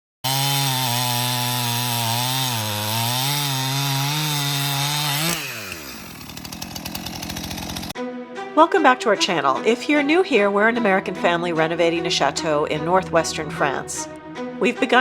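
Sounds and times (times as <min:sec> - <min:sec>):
power saw running: 0:00.3 - 0:08.0.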